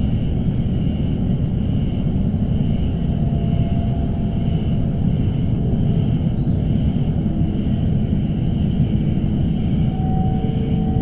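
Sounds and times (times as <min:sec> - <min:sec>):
low rumbling drone: 0:00.0 - 0:11.0
faint held tones: 0:07.4 - 0:11.0.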